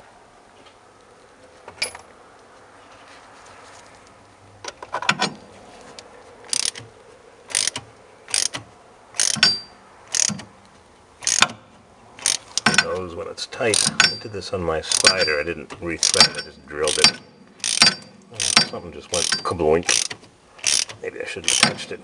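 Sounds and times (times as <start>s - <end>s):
ratchet wrench clicking: 6.5s - 6.9s, 7.5s - 8.6s, 9.2s - 10.5s, 11.2s - 11.6s, 12.2s - 12.9s, 13.7s - 14.2s, 14.9s - 15.4s, 16.0s - 21.8s.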